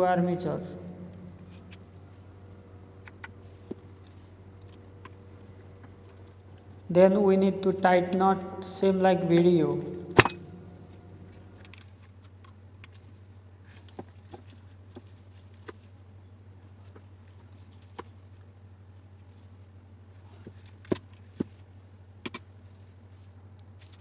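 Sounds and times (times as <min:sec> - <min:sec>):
steady low hum: 0:00.0 - 0:11.8
metal tools clicking and tapping: 0:10.0 - 0:11.8.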